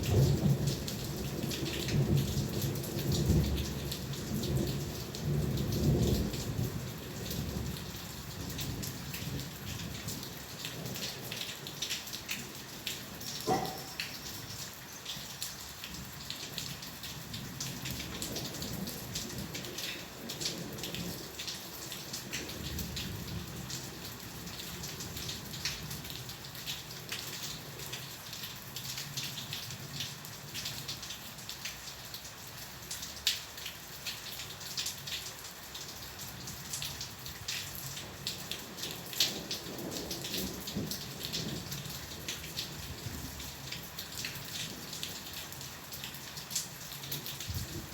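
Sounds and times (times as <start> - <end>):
low thunder rumbling: 0.0 - 11.4
rain drops pattering: 0.0 - 47.9.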